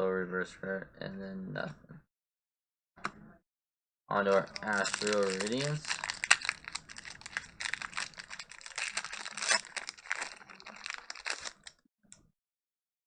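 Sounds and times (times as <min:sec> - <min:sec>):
foil wrapper tearing and crinkling: 0:04.3 - 0:11.7.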